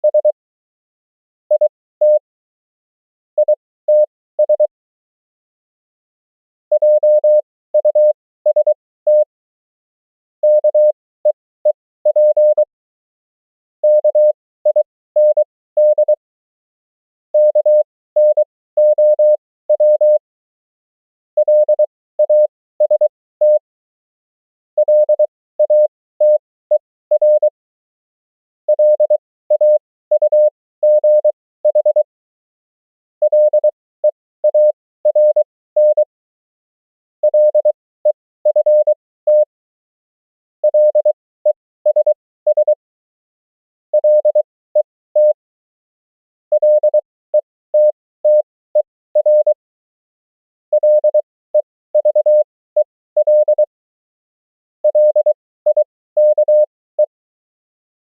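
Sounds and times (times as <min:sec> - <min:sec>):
morse code tone: 0:40.6 - 0:41.1, 0:44.0 - 0:44.4, 0:46.5 - 0:49.6, 0:50.7 - 0:53.6, 0:54.8 - 0:57.1.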